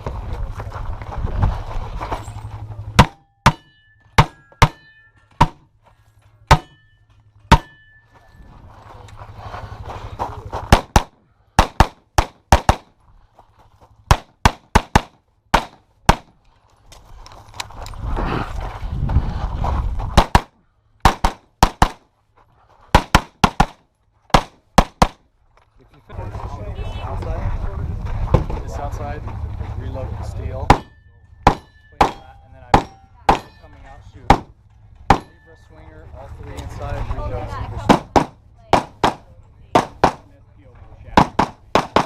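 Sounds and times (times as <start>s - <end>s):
rustling and shuffling movement: 0.0s - 3.0s, 8.0s - 10.7s, 13.0s - 14.1s, 16.4s - 20.2s, 25.4s - 31.4s
steel targets ringing: 2.2s - 5.7s, 6.4s - 8.4s, 30.6s - 34.1s, 35.1s - 35.8s
handgun shots: 10.7s - 12.9s, 20.2s - 22.0s.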